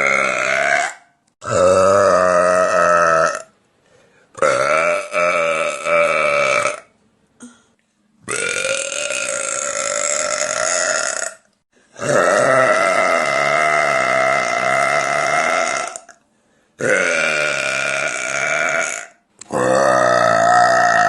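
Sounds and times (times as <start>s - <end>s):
woman burping: 4.4s - 16.2s, 16.8s - 21.0s.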